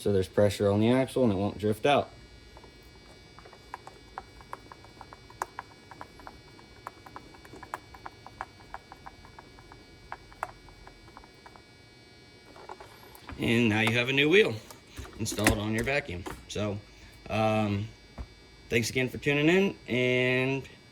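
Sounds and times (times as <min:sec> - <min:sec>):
screwdriver clicking in plastic: 0:03.4 - 0:11.6, 0:12.5 - 0:16.5.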